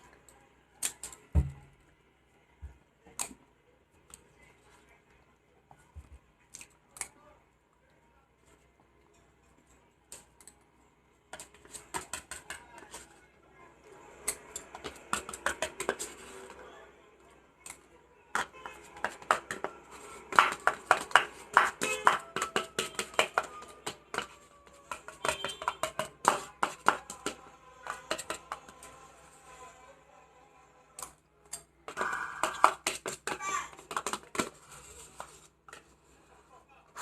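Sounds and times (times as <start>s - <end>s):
metal spoon scraping container: 14.3s - 16.6s, 18.4s - 29.0s.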